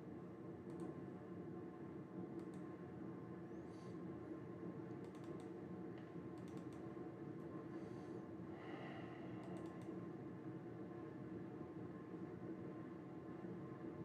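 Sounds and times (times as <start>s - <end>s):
steady low hum: 0.0s - 14.0s
computer keyboard key clicks: 5.0s - 5.5s, 6.4s - 6.9s, 9.4s - 9.9s.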